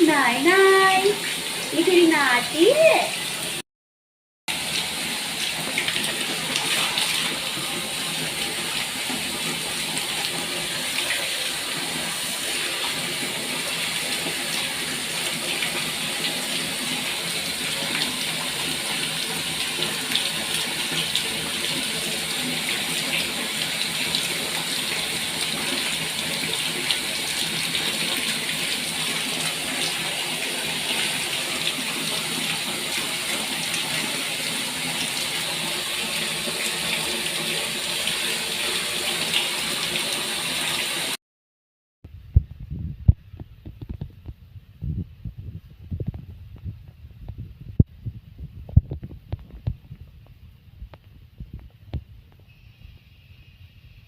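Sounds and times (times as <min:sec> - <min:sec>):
running water splashing: 0:00.0 - 0:03.6, 0:04.5 - 0:41.2.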